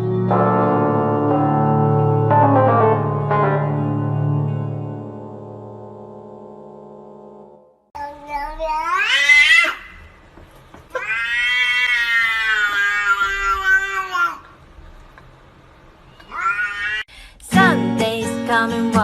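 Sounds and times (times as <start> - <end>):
cat yowling: 8.3 - 10.1, 10.9 - 14.4, 16.2 - 17.1.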